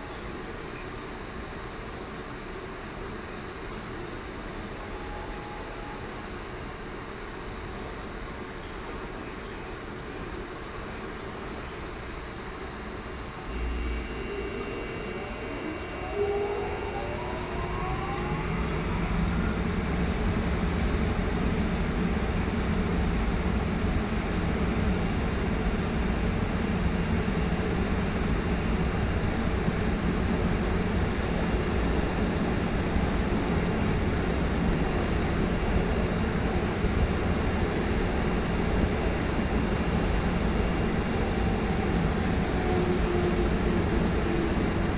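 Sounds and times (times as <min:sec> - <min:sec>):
electric train whine: 0:00.0 - 0:44.9
train wheels rumble on rails: 0:14.3 - 0:44.9.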